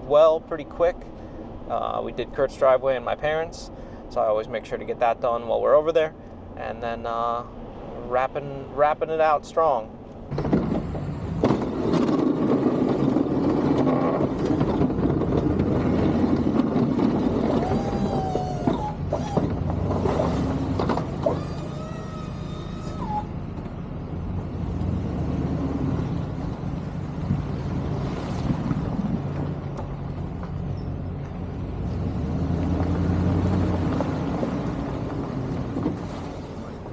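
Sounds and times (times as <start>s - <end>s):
road noise: 0.0s - 36.9s
truck engine rumble: 0.0s - 36.9s
brief whining tones: 21.2s - 23.3s.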